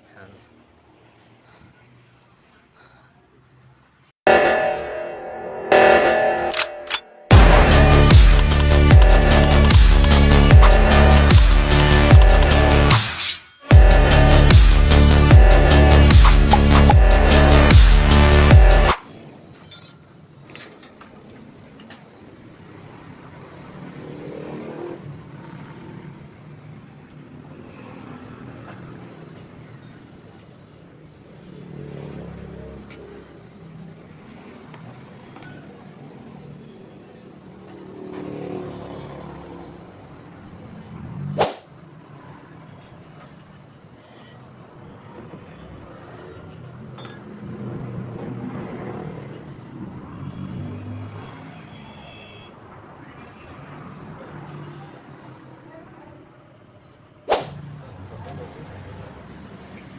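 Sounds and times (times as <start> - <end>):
vehicles passing: 0.0 - 4.1, 6.5 - 59.9
background noise: 0.0 - 4.2
vehicle engine running: 7.3 - 13.0
vehicle engines running: 7.3 - 13.1, 13.7 - 59.9.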